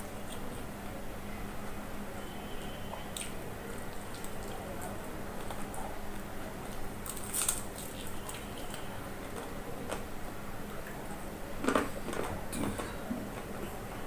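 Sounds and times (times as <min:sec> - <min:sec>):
low steady hum: 0:00.0 - 0:14.0
crunchy food being chewed: 0:03.0 - 0:12.4.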